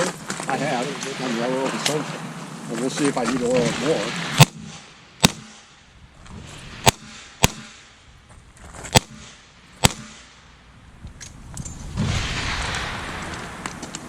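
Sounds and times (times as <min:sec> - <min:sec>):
revolver shots: 0:03.5 - 0:05.8, 0:06.8 - 0:07.9, 0:08.9 - 0:10.4.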